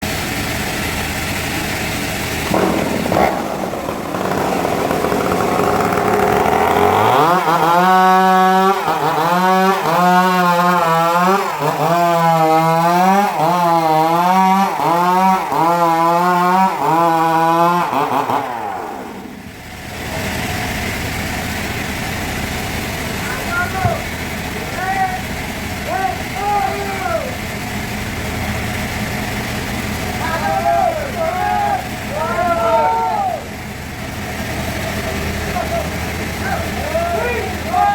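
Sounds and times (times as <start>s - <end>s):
saw blade whine cutting log: 0.0s - 37.9s
sawmill machinery running: 0.0s - 37.9s.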